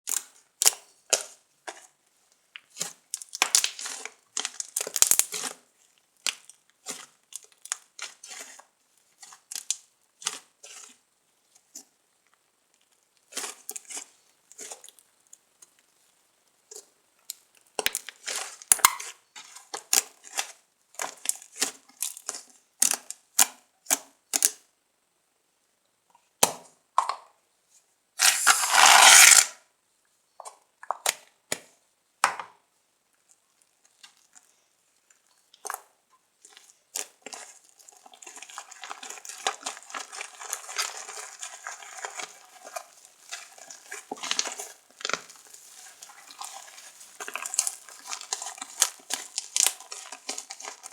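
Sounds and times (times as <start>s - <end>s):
slime squishing and crackling: 35.1s - 50.9s.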